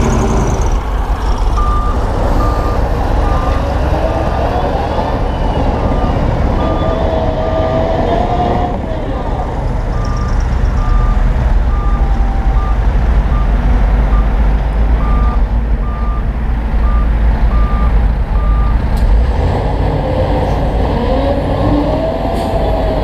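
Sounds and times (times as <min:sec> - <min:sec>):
diesel engine running loudly: 0:00.0 - 0:23.0
reversing alarm beeping: 0:01.6 - 0:08.7, 0:09.9 - 0:14.4, 0:15.0 - 0:18.8.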